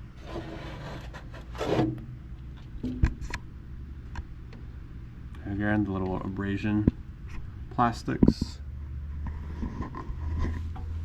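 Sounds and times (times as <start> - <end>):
rustling and rubbing: 0.0 - 2.0
steady low hum: 0.0 - 11.0.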